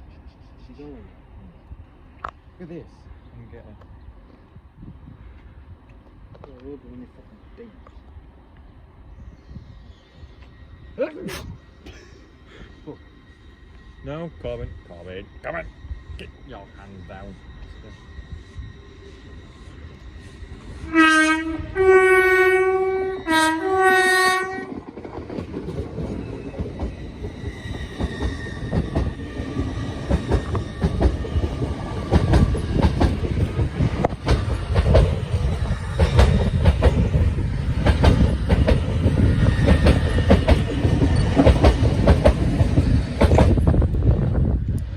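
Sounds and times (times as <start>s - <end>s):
train horn blasts: 20.8s - 24.8s
rail-joint clickety-clack: 23.2s - 44.9s.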